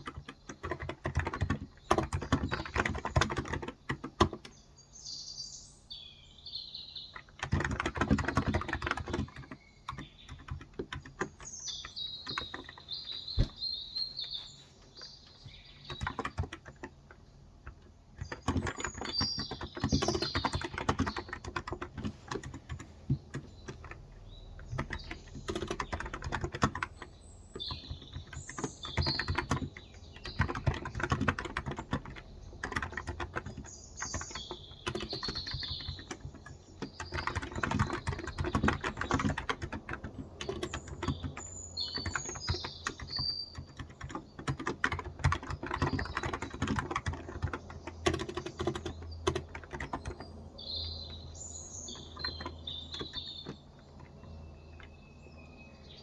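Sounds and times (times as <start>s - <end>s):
keyboard typing: 0.0s - 4.6s, 7.1s - 55.3s
birds chirping: 0.0s - 56.0s.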